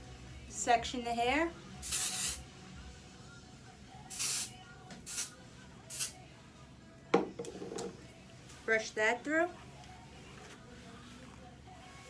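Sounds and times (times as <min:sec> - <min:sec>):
aerosol spray hissing: 0:01.8 - 0:02.4, 0:04.1 - 0:06.2.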